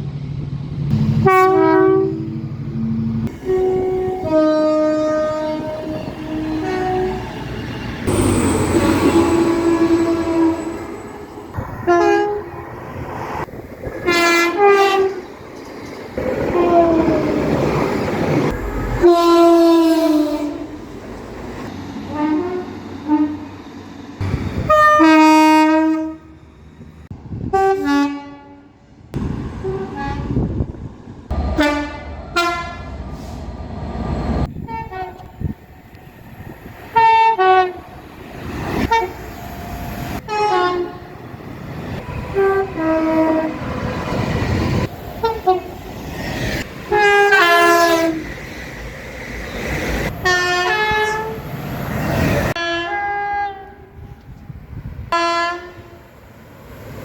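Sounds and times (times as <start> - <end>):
train running noise: 0.0 - 57.0
train horn blasts: 0.9 - 7.4, 8.0 - 12.6, 14.0 - 15.2, 16.4 - 17.3, 18.5 - 20.8, 22.1 - 23.6, 24.6 - 26.4, 27.4 - 28.8, 29.6 - 30.6, 31.3 - 33.4, 34.5 - 35.5, 36.9 - 37.9, 38.8 - 39.3, 40.2 - 41.2, 42.0 - 43.9, 45.2 - 45.8, 46.6 - 48.2, 50.1 - 51.4, 52.5 - 54.3, 55.0 - 56.0.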